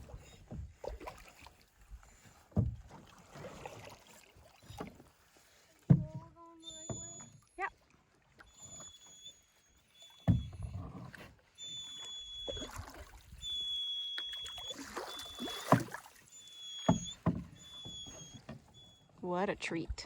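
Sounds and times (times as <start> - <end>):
paddling water swish: 0.0 - 19.0
paddle knocking canoe hull: 2.1 - 3.8, 4.6 - 7.4, 10.2 - 11.3, 13.5 - 19.0
dog whining: 6.6 - 7.7, 8.5 - 12.8, 13.4 - 19.1.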